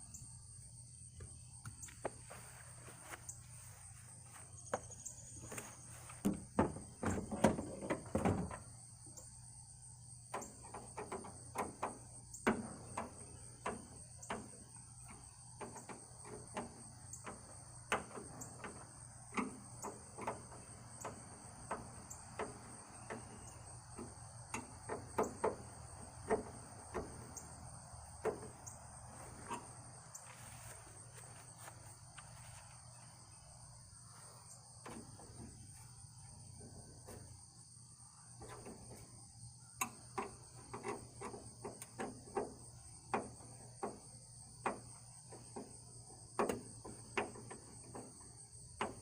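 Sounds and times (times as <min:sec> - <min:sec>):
clicks and knocks of hand work: 0:10.3 - 0:30.8, 0:39.8 - 0:49.0.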